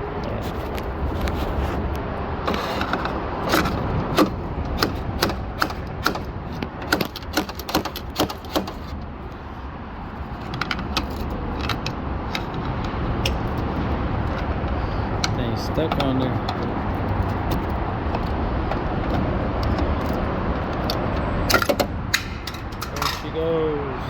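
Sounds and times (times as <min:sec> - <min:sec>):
steady low rumble: 0:00.0 - 0:07.3, 0:08.9 - 0:24.0
metal clicks and rattles of door handle: 0:03.0 - 0:09.0, 0:10.5 - 0:23.3.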